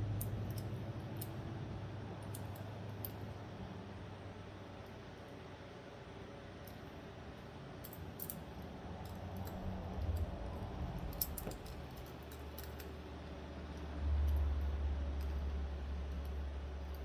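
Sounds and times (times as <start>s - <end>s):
metal knife parts clicking: 0.2s - 1.4s, 2.2s - 3.2s, 7.8s - 10.3s, 11.0s - 13.0s
low rumble: 8.7s - 16.9s.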